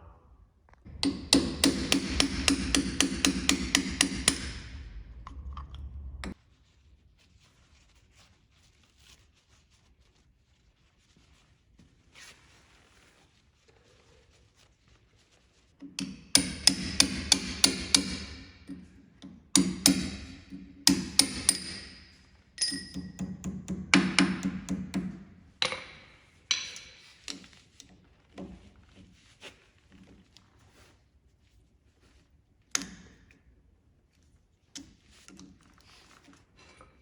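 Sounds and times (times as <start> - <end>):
hammer striking metal: 0.9 - 6.4, 16.0 - 18.9, 19.6 - 27.0.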